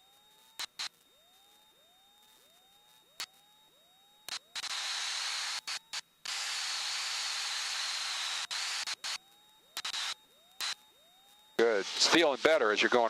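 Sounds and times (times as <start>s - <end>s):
static hiss on headset: 4.3s - 10.9s.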